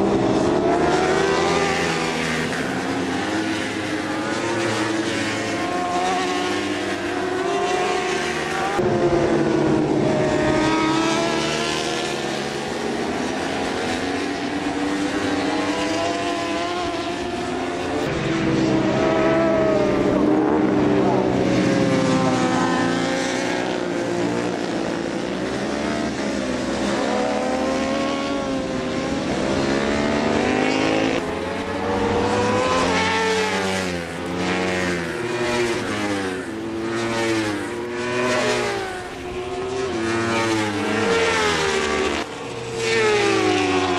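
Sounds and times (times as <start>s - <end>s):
racing motorcycle engines revving: 0.0s - 43.9s.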